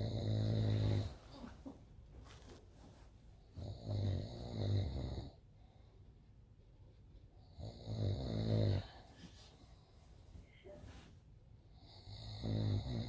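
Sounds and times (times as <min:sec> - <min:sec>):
man snoring loudly: 0:00.0 - 0:01.2, 0:03.6 - 0:05.4, 0:07.5 - 0:09.0, 0:11.8 - 0:13.0.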